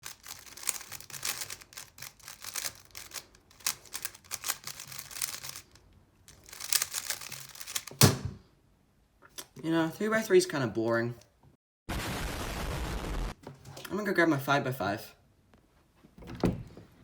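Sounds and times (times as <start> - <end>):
puzzle cube plastic clicking: 0.0 - 8.0.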